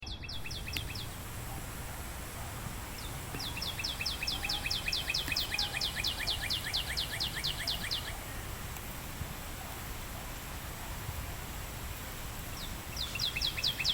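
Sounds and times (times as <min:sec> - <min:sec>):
bird chirping: 0:00.0 - 0:08.6, 0:12.4 - 0:13.9.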